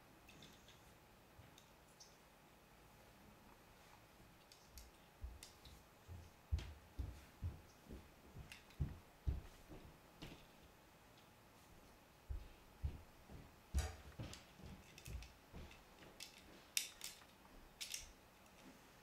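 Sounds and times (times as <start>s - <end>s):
plastic bricks clicking together: 16.2s - 18.1s.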